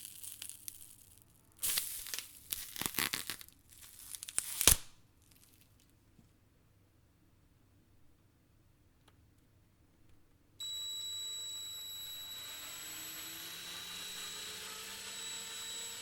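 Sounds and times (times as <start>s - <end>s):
ragged tearing: 1.6s - 5.7s.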